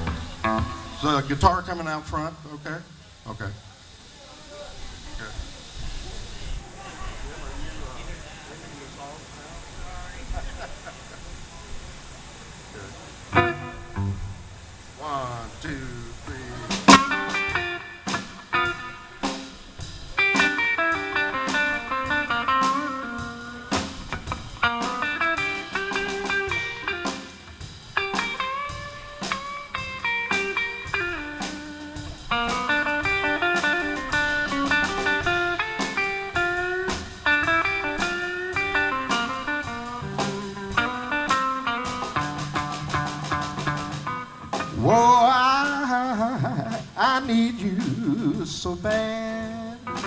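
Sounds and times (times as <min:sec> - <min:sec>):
bass: 0:00.0 - 0:01.7, 0:12.8 - 0:17.2, 0:30.9 - 0:45.8
electric lead guitar: 0:00.0 - 0:04.0, 0:05.2 - 0:50.0
drum beat: 0:00.0 - 0:04.1, 0:04.9 - 0:50.0.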